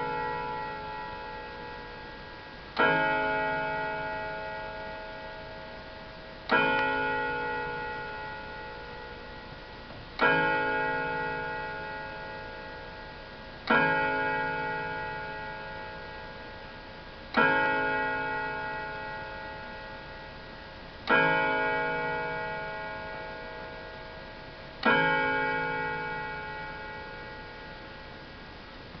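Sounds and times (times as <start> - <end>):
chiming clock striking: 0.0 - 29.0.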